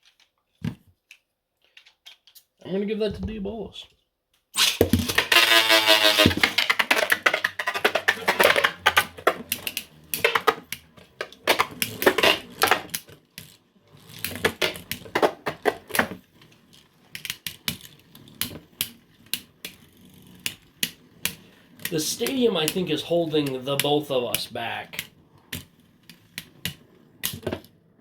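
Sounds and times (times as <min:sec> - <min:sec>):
spinning tops clashing and rattling: 0:04.6 - 0:15.7.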